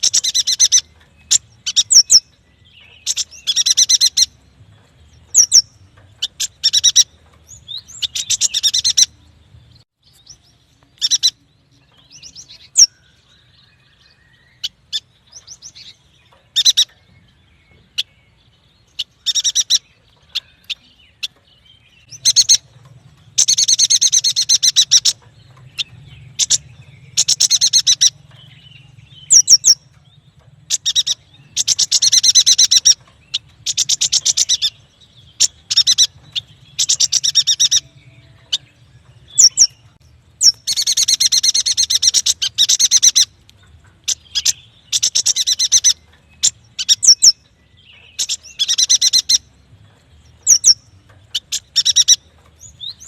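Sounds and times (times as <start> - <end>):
bird chattering trills: 0.0 - 4.4, 5.2 - 9.2, 10.2 - 17.1, 18.9 - 21.4, 22.0 - 49.5, 50.4 - 53.0.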